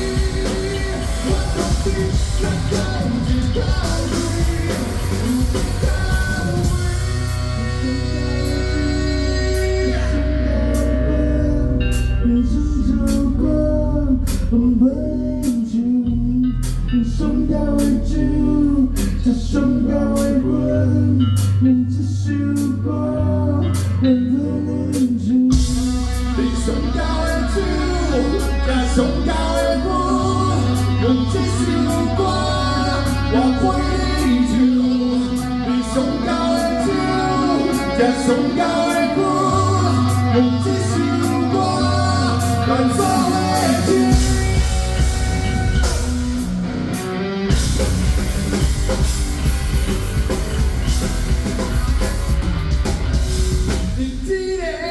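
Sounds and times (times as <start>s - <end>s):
steady drum beat: 0.0s - 7.5s, 25.5s - 26.4s, 42.4s - 54.9s
person singing: 0.0s - 49.1s
bass line: 0.0s - 54.9s
guitar: 0.0s - 54.9s.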